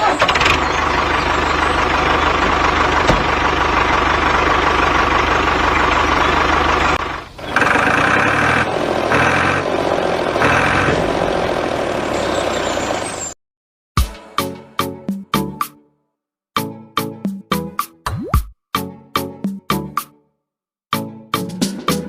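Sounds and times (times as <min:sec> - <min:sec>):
small engine running: 0:00.0 - 0:13.3.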